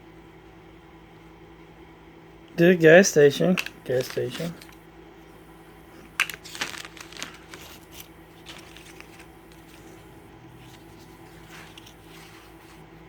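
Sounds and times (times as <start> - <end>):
faint steady hum: 0.0 - 13.0
cardboard tiles clicking and rustling: 3.5 - 4.8, 6.1 - 10.0, 10.6 - 12.8.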